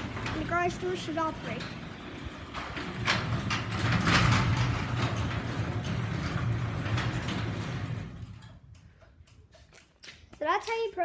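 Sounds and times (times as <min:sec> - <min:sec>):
door knocks and rattles: 0:00.0 - 0:08.5
garage door motor humming: 0:00.0 - 0:08.8.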